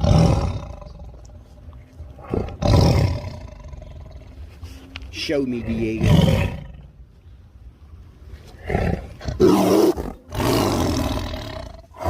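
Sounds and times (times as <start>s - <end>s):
tiger roaring: 0.0s - 4.4s, 5.4s - 7.0s, 8.5s - 12.0s.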